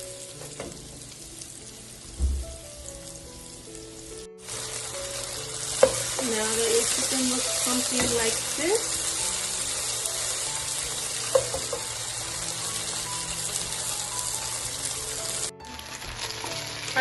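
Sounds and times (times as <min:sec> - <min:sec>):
chicken frying in hot oil: 0:04.0 - 0:17.0.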